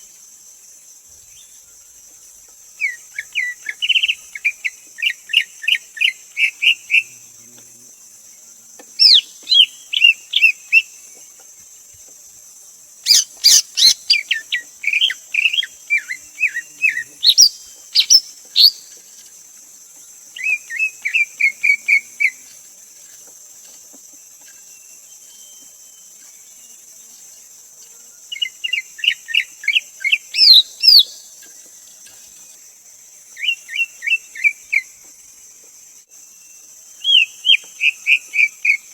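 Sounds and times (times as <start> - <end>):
high insect buzz: 0.0 - 38.9
bird singing whistled notes: 9.0 - 10.9, 13.0 - 19.0, 24.6 - 26.2, 28.3 - 31.3, 33.4 - 34.9, 36.4 - 38.9.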